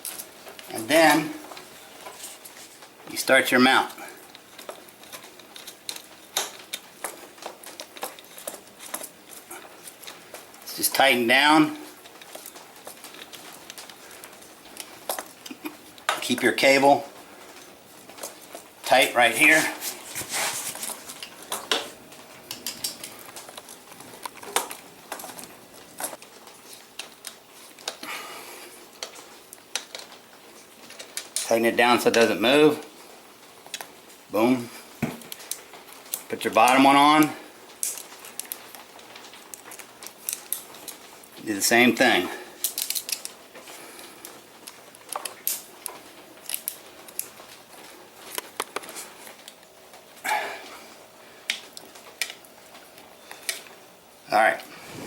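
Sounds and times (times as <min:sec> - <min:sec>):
short rustle: 0:18.1 - 0:22.3, 0:54.7 - 0:55.0
small metallic clicks and taps: 0:22.5 - 0:26.2.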